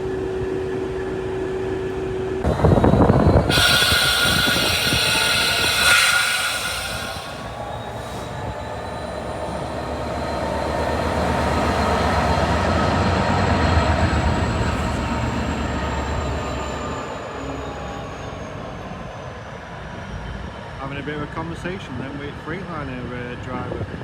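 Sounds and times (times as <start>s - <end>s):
train rumbling past: 0.0s - 24.0s
high wheel whine: 2.4s - 9.3s
burst of high hiss: 3.5s - 8.2s.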